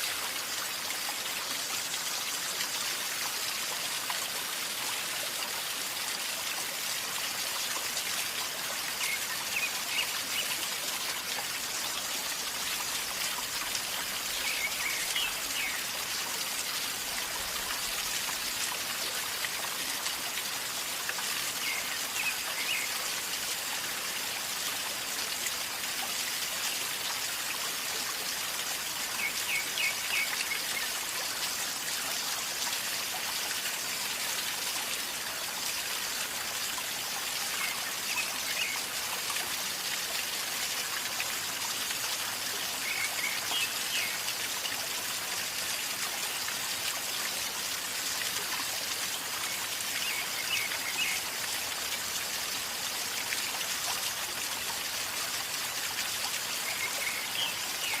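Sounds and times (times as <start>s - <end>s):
river gurgling: 29.2s - 31.8s.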